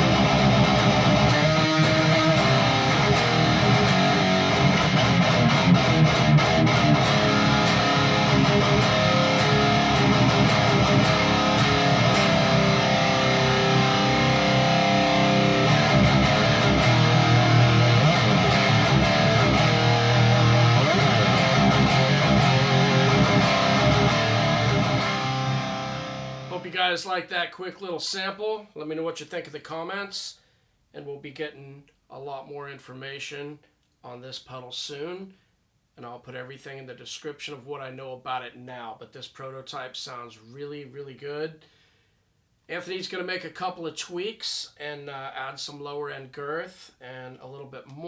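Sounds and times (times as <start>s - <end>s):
distorted electric guitar riffs: 0.0s - 26.8s.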